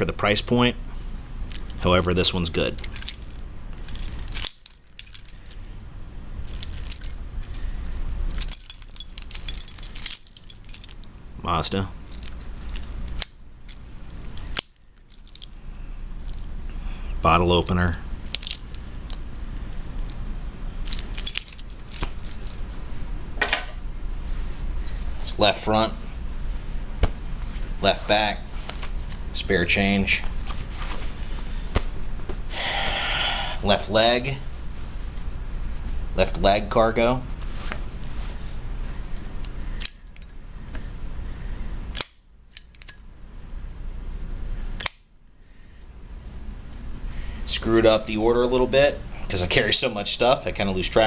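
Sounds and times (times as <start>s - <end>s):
low steady background noise: 0.0s - 51.0s
keys jingling on keyring: 2.8s - 5.6s, 6.5s - 7.6s, 8.3s - 11.1s, 20.8s - 22.6s.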